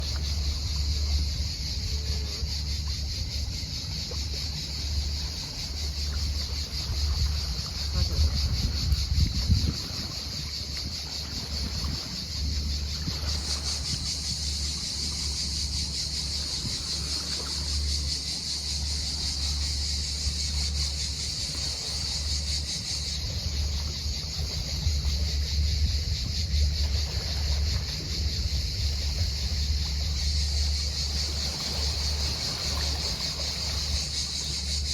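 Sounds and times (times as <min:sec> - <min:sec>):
cicadas droning: 0:00.0 - 0:34.9
wind rumbling on microphone: 0:00.0 - 0:34.9.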